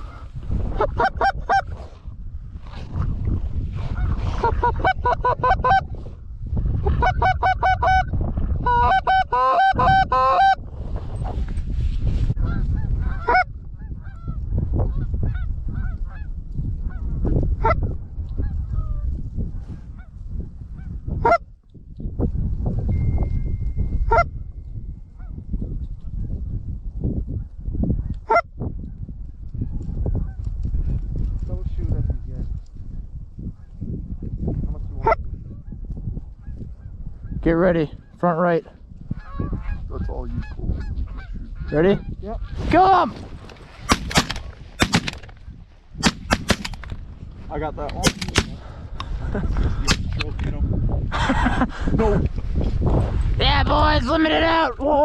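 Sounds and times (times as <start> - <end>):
geese honking and clucking: 0.0 - 1.8, 3.9 - 6.0, 6.8 - 10.6, 12.4 - 14.3, 39.1 - 42.6.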